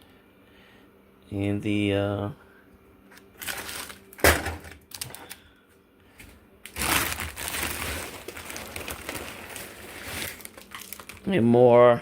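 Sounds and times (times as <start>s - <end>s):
plastic rustling and crinkling: 3.4s - 5.4s, 6.2s - 11.5s
package knocking down: 4.2s - 4.8s.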